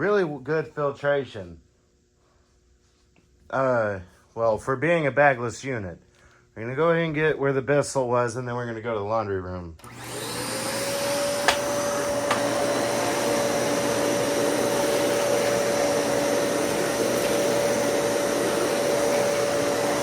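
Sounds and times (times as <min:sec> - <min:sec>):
vacuum cleaner motor whine: 0:09.8 - 0:20.0.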